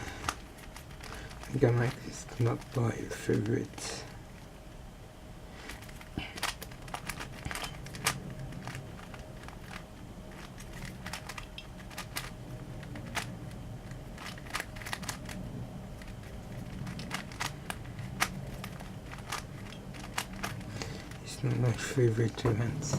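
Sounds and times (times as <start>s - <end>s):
steady low hum: 0.0s - 22.9s
plastic puzzle cube clicking: 5.7s - 15.4s, 16.0s - 20.7s.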